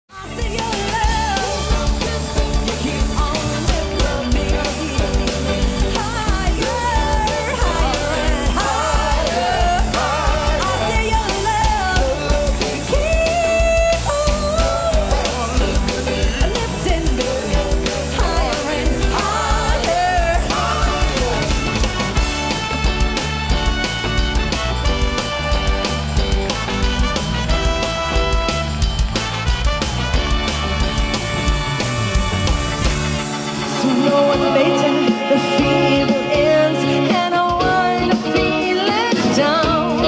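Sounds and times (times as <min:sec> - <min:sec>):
person singing: 0:00.1 - 0:22.5, 0:33.3 - 0:40.0
upbeat band music: 0:00.1 - 0:40.0
steady drum beat: 0:00.3 - 0:40.0.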